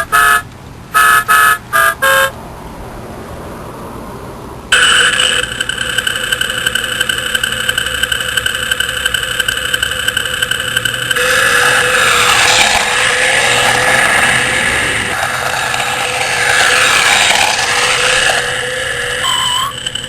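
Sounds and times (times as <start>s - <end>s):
car engine accelerating: 8.7s - 20.0s.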